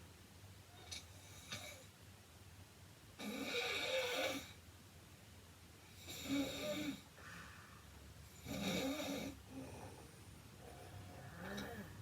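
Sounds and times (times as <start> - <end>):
woman snoring: 3.2 - 4.5, 6.0 - 7.0, 8.4 - 10.0, 11.1 - 12.0.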